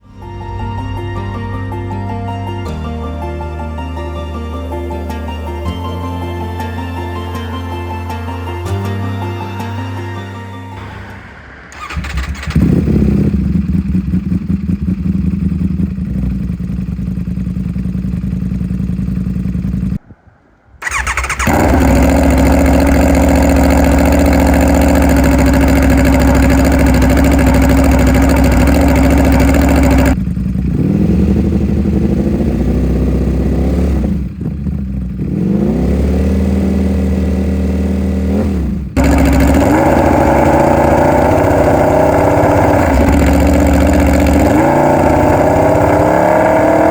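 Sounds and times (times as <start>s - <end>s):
motorcycle engine idling and revving: 11.7s - 20.0s, 20.8s - 46.9s.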